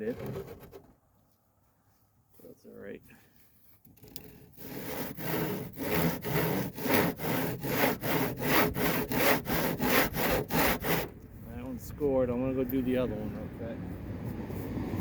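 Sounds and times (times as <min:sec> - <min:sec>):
handsaw cutting wood: 0:04.0 - 0:11.1.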